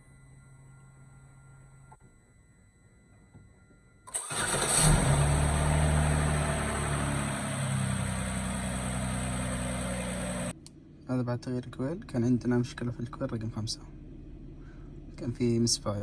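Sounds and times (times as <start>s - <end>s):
car engine starting and idling: 4.1s - 10.5s.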